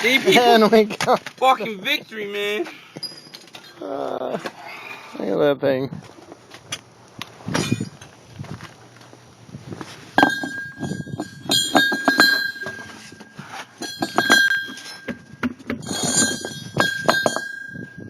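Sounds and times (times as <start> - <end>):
metallic knocks with ringing tone: 10.2 - 18.0.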